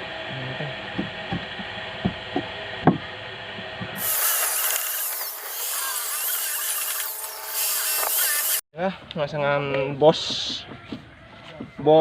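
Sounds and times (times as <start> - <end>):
knocks on wood: 1.0 - 3.0
power tool whining: 4.0 - 8.6.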